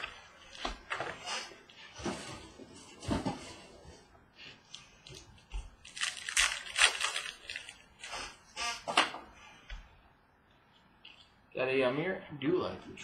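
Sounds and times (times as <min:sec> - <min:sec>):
card wrappers crinkling and tearing: 0:05.1 - 0:08.4.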